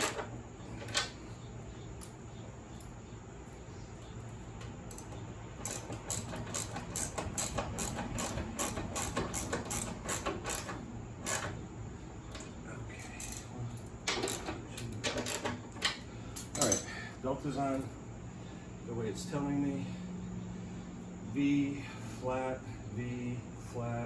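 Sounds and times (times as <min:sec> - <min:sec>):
ratchet wrench clicking: 0:04.9 - 0:11.6, 0:13.0 - 0:16.9.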